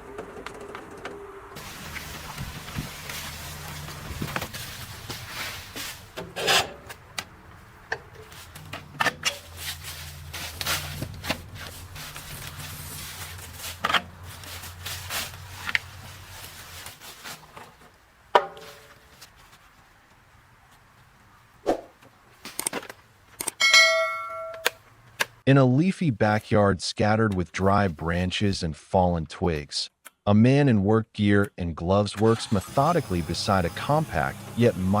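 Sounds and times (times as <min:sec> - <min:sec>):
wood scraping and cracking: 0:00.0 - 0:07.1, 0:08.0 - 0:18.0.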